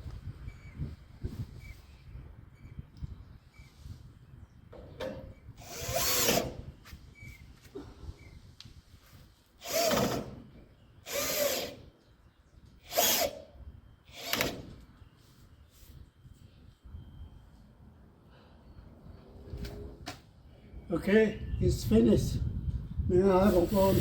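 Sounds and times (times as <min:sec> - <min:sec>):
power drill running in bursts: 0:05.6 - 0:06.6, 0:09.6 - 0:10.3, 0:11.0 - 0:11.8, 0:12.8 - 0:13.4.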